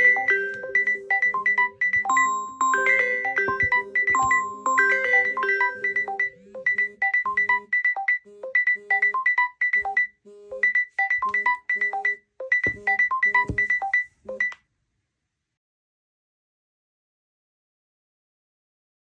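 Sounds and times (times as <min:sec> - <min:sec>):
phone melodic alert tone: 0:00.0 - 0:14.5.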